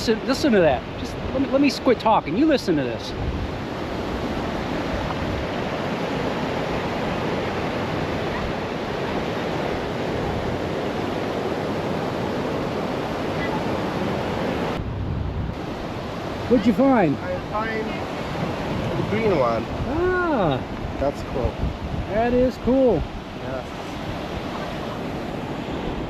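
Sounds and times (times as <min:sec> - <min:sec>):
sea waves breaking on beach: 0:00.0 - 0:26.0
wind on microphone: 0:00.0 - 0:26.0.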